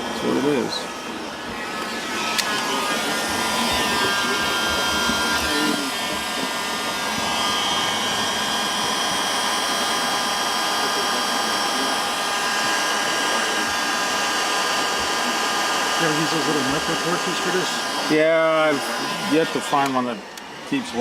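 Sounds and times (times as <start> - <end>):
heat gun blowing hot air: 1.7 - 20.0.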